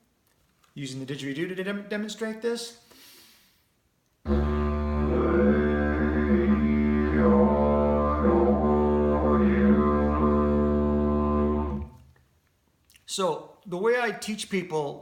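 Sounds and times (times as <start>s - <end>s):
didgeridoo drone with vowel tones: 4.3s - 12.0s.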